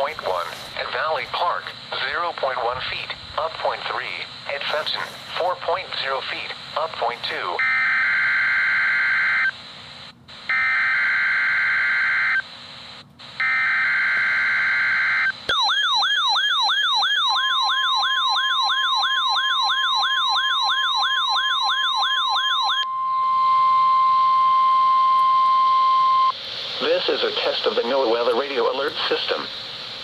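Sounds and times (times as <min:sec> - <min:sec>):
steady warning alarm tone: 0:03.6 - 0:09.6, 0:10.4 - 0:12.5, 0:13.2 - 0:26.4
fast warbling siren: 0:07.6 - 0:09.5, 0:10.5 - 0:12.4, 0:13.4 - 0:26.3.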